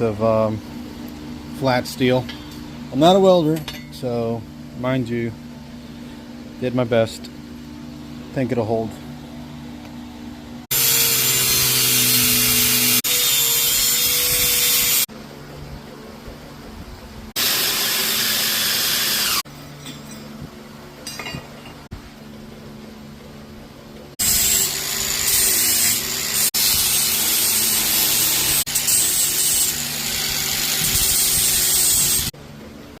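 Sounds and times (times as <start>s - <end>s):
tool working steel: 10.7s - 15.1s, 17.4s - 20.3s, 24.2s - 32.3s.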